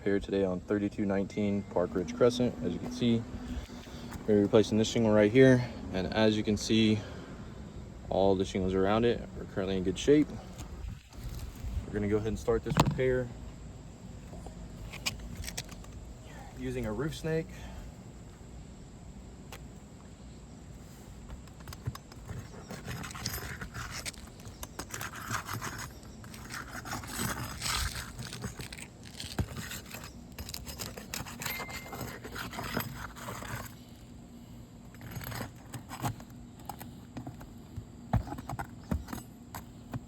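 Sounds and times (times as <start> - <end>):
metal tool scraping under shingles: 1.3 - 4.8, 10.1 - 13.2, 14.3 - 16.0, 20.8 - 34.2, 34.9 - 37.4
metal clinks: 21.7 - 33.9.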